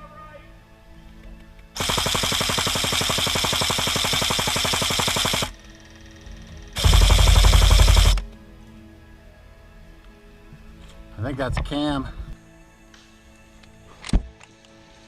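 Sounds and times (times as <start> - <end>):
airsoft guns firing full auto: 1.8 - 5.6, 6.8 - 8.2.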